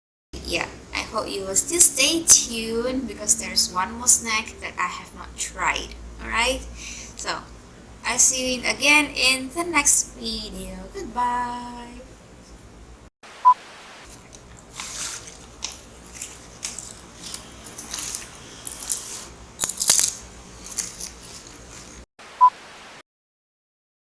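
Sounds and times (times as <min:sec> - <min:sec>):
crunchy snack being chewed: 0:14.3 - 0:22.0.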